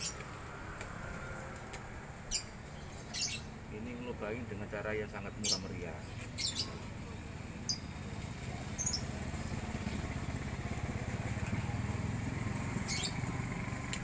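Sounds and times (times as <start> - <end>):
birds chirping: 0.0 - 14.0
small engine running: 6.5 - 14.0.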